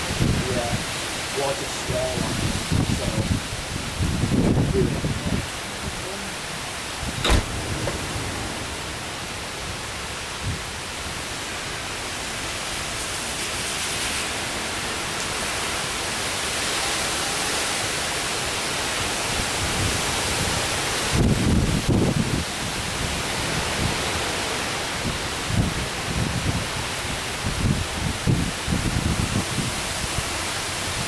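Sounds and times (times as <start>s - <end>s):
rain: 0.0s - 31.0s
wind: 0.0s - 31.0s
low thump: 7.1s - 9.1s
short knock: 7.2s - 8.1s.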